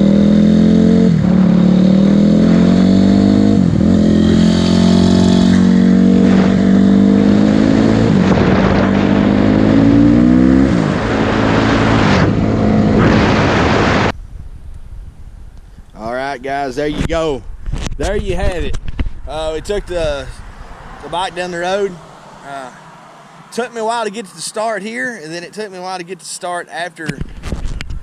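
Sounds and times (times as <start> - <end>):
motorcycle engine accelerating: 0.0 - 14.6.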